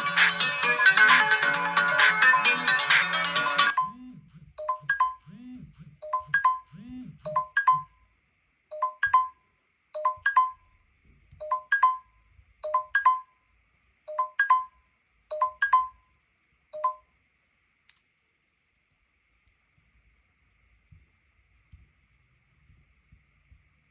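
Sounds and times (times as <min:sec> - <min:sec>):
phone alarm beeping: 0:04.6 - 0:05.3, 0:06.0 - 0:08.0, 0:08.7 - 0:09.4, 0:10.0 - 0:10.7, 0:11.4 - 0:13.4, 0:14.1 - 0:16.0, 0:16.8 - 0:17.0.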